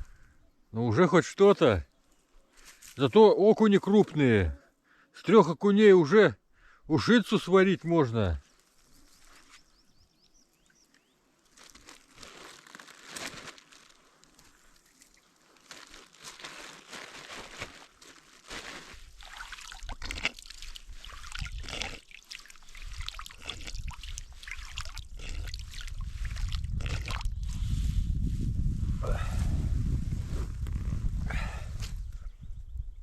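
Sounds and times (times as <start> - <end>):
water splashing and trickling: 14.2 - 16.7, 18.9 - 27.4.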